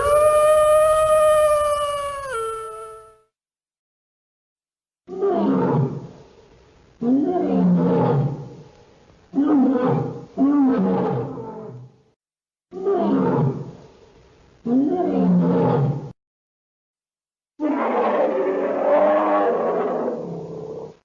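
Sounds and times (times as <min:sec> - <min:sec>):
big cat roaring: 0:17.6 - 0:21.0.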